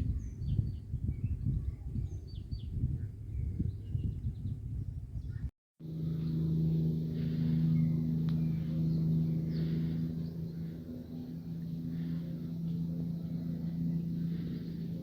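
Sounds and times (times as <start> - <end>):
birds chirping: 0.0 - 15.0
motor hum with low drone: 0.0 - 15.0
rumbly outdoor sound: 0.0 - 15.0.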